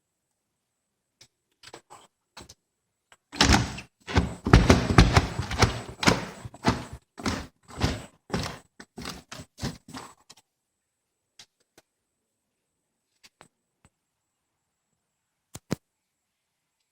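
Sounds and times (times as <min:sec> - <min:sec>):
door thudding and rattling: 0:03.4 - 0:09.2.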